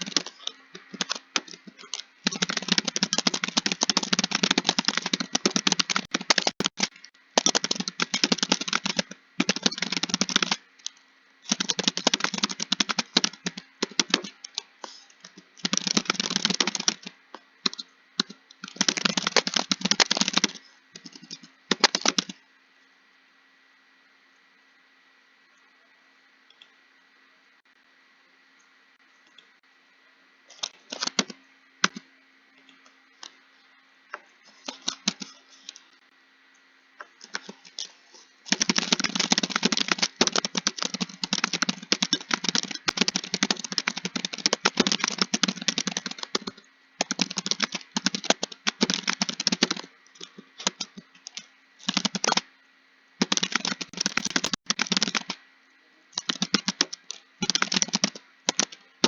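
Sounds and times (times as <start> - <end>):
typing on computer keyboard: 0.0 - 22.4, 30.5 - 32.0, 34.5 - 35.8, 38.5 - 52.5, 53.2 - 55.4, 56.2 - 58.8.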